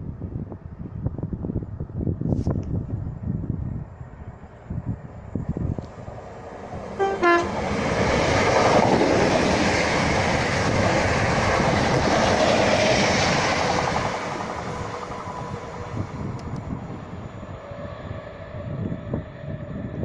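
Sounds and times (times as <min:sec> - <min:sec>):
train wheels rushing on rail: 0:04.7 - 0:20.0
train horn notes: 0:07.0 - 0:07.8.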